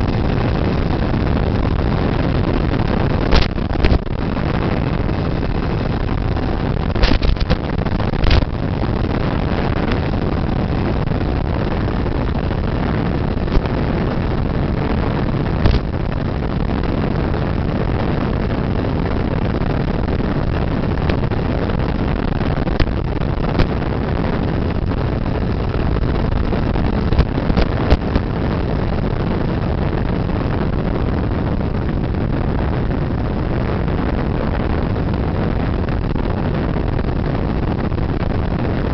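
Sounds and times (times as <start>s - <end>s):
air rushing over microphone: 0.0s - 38.9s
brief crackles: 3.3s - 4.0s, 7.0s - 7.6s, 8.2s - 8.5s, 15.6s - 16.0s.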